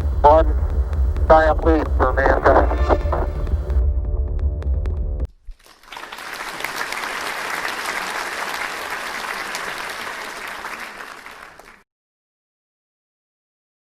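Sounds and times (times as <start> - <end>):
crowd applauding: 5.5 - 11.8.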